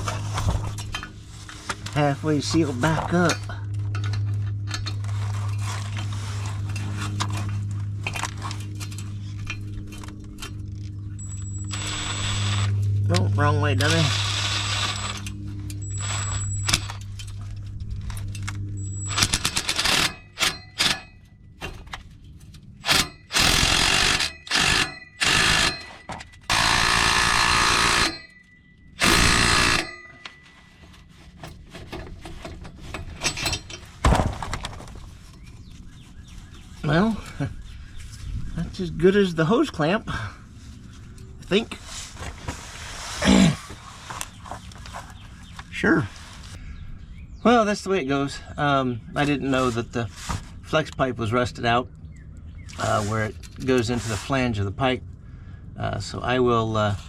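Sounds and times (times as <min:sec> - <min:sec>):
metal pipes clinking and scraping: 0:00.0 - 0:11.8, 0:27.7 - 0:34.0
steady low hum: 0:00.0 - 0:57.0
power tool rapid hammering: 0:19.1 - 0:21.1, 0:22.8 - 0:28.3, 0:29.0 - 0:30.3.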